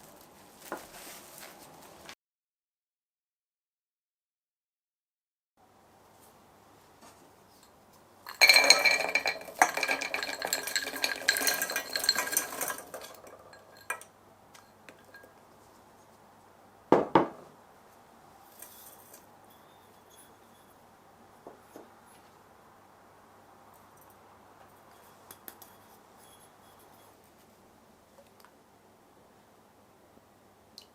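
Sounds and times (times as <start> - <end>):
utensil scraping a ringing dish: 8.3 - 15.3, 18.6 - 20.9, 24.8 - 27.2.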